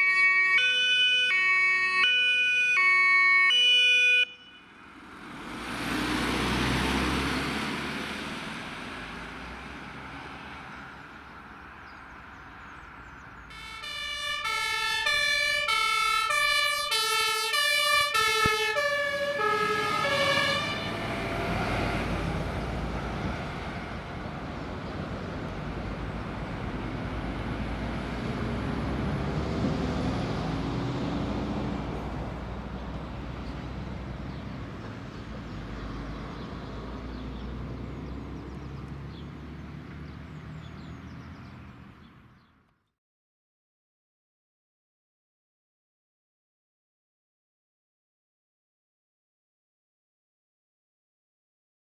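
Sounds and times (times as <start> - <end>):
two-tone siren: 0.0 - 4.8, 13.5 - 22.1
emergency vehicle driving past: 0.0 - 42.3
fire engine diesel engine passing: 0.0 - 42.5.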